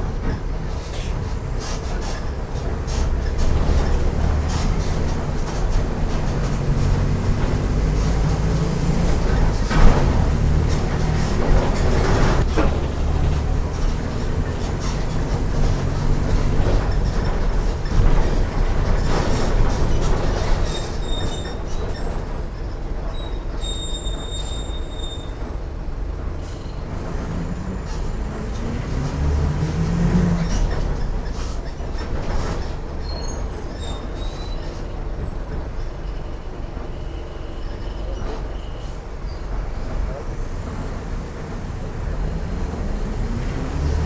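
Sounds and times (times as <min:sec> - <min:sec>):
rattles: 0:00.0 - 0:22.2, 0:26.2 - 0:36.1
bus diesel engine running: 0:00.0 - 0:44.0
thin high squeaks: 0:00.4 - 0:22.6, 0:23.2 - 0:25.4.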